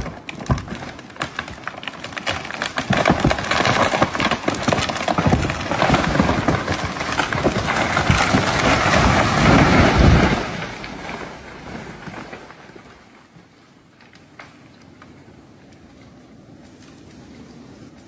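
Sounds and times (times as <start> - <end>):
debris rustling: 0.0 - 13.3
tree falling and branches cracking: 0.0 - 17.6.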